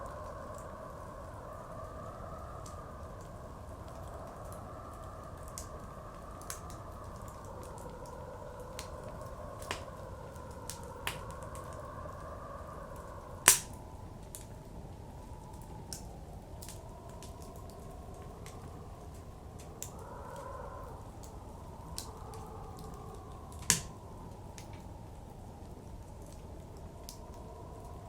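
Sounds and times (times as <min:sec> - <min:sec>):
blizzard wind howling: 0:00.0 - 0:28.0
wood fire crackling: 0:00.0 - 0:28.0.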